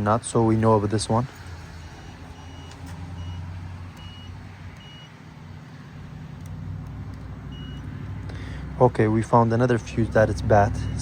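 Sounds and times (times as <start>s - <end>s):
short high beeps: 4.0s - 5.1s.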